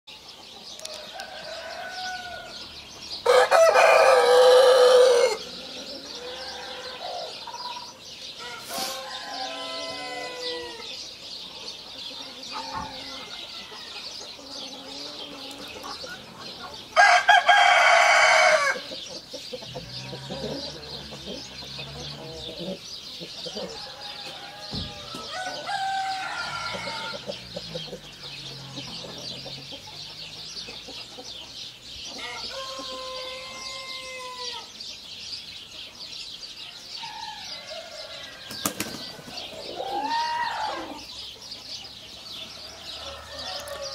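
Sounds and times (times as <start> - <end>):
rooster crowing: 1.0 - 2.6, 3.2 - 5.5, 8.4 - 10.9, 17.0 - 18.8, 23.5 - 27.6, 32.2 - 34.7
hens clucking: 11.5 - 34.6.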